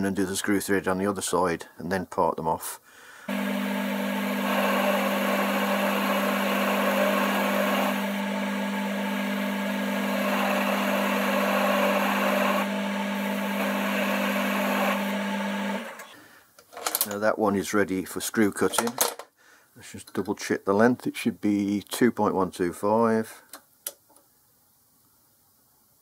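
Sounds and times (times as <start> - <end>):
cutting tool hissing on metal: 3.3 - 16.1
metal lathe motor hum: 3.3 - 16.1.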